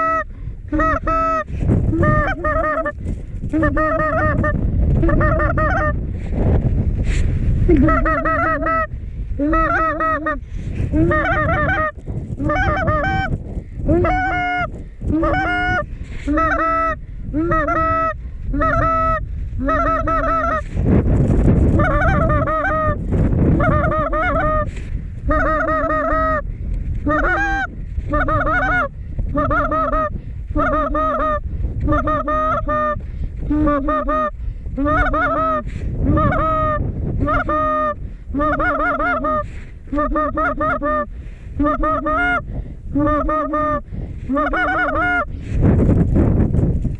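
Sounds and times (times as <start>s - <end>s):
goose honking: 0.0s - 3.0s, 3.6s - 6.0s, 11.0s - 13.3s, 13.9s - 20.8s, 21.8s - 23.0s, 27.0s - 33.0s, 33.6s - 42.4s, 43.0s - 45.3s
wind buffeting microphone: 0.0s - 46.9s.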